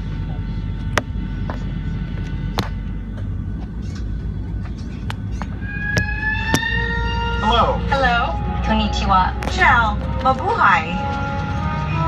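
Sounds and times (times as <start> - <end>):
low cabin hum: 0.0 - 12.0
music through cabin speakers: 7.9 - 11.9.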